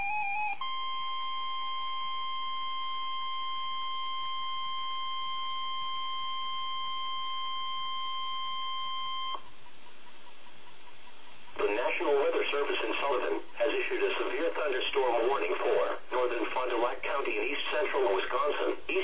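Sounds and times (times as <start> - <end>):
long steady alarm tone: 0.0 - 9.5
radio hiss: 9.4 - 19.0.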